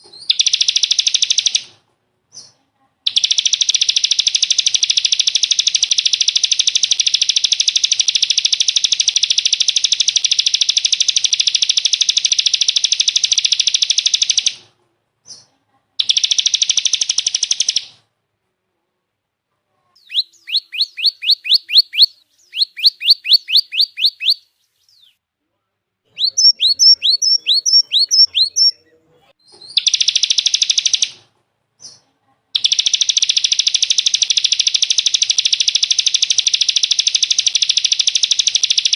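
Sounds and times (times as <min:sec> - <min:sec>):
buzzy bird trill: 0:03.1 - 0:14.6, 0:20.0 - 0:25.2, 0:26.1 - 0:28.8
slurred bird whistles: 0:20.0 - 0:25.2, 0:26.2 - 0:28.8, 0:32.6 - 0:38.9.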